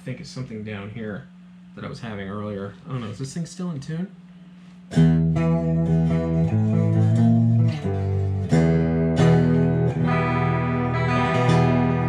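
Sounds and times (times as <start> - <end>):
electric guitar ringing chords: 4.9 - 12.0.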